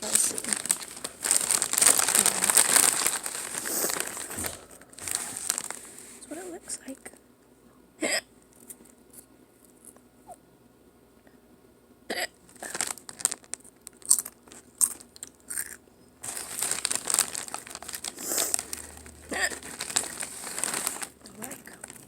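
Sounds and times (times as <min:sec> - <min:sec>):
chips crunching: 0:00.0 - 0:05.9, 0:12.5 - 0:22.0
foil bag crinkling: 0:00.0 - 0:06.9, 0:12.5 - 0:22.0.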